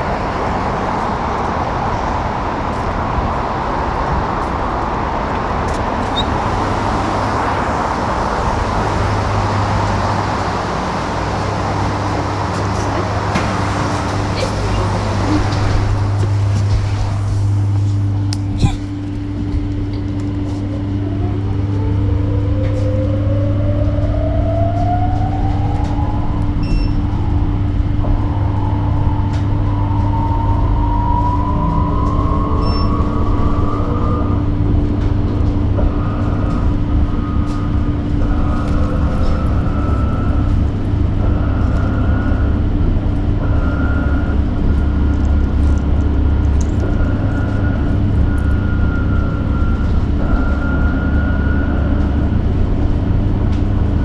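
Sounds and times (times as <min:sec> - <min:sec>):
electric bus motor whine: 0:00.0 - 0:54.0
road noise: 0:00.0 - 0:54.0.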